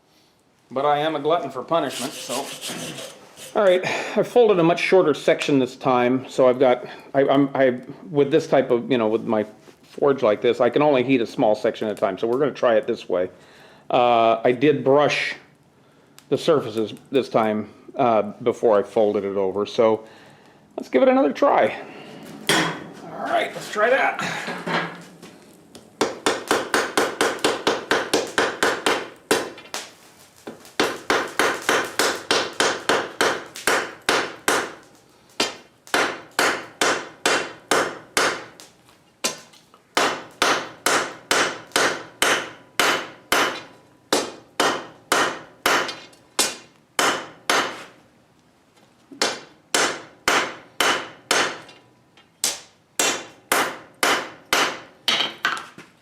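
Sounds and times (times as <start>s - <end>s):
anvil ringing: 21.8s - 23.4s
hammer striking steel on anvil: 22.4s - 23.1s, 26.0s - 29.6s, 39.2s - 47.9s, 49.2s - 51.8s, 52.4s - 55.6s.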